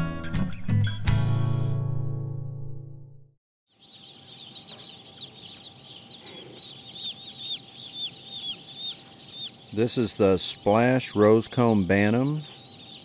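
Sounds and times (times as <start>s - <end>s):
chicks peeping: 3.7s - 13.0s.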